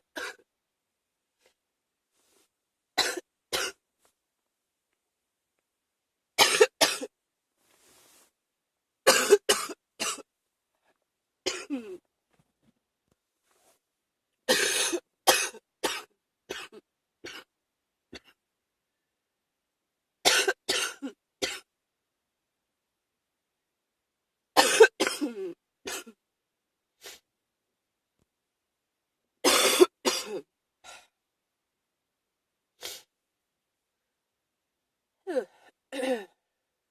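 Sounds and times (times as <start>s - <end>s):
person coughing: 3.0s - 3.8s, 6.4s - 7.1s, 9.1s - 10.3s, 11.5s - 12.0s, 14.5s - 17.5s, 20.3s - 21.7s, 24.6s - 26.2s, 29.4s - 30.5s.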